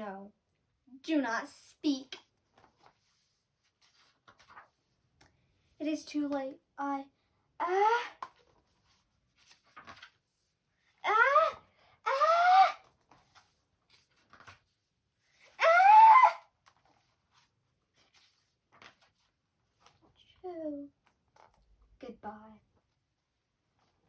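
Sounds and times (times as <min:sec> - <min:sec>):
child vocalizing: 0:07.6 - 0:08.2, 0:11.0 - 0:12.8, 0:15.6 - 0:16.4.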